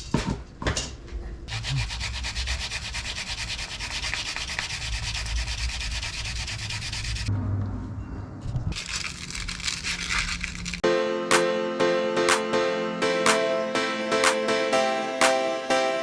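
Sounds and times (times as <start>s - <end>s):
sandpaper scrubbing metal rim: 1.5s - 7.3s.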